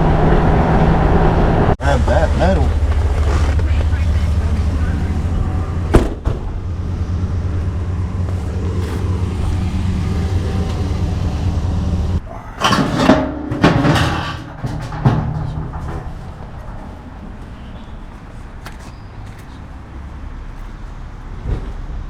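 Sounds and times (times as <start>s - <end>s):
car engine rumbling: 0.0s - 22.0s
loud clattering knocks: 2.1s - 18.9s
sharp knock: 5.9s - 6.6s.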